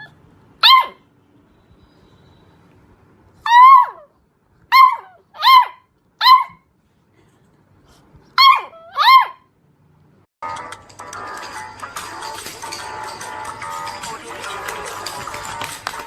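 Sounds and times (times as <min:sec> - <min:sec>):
dog yelping: 0:00.0 - 0:01.0, 0:03.4 - 0:04.1, 0:04.7 - 0:06.6, 0:08.4 - 0:09.4.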